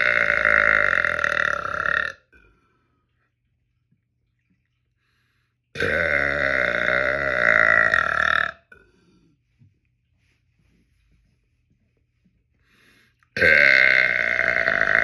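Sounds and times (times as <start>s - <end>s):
man burping: 0.0s - 2.5s, 5.8s - 8.9s, 13.4s - 15.0s.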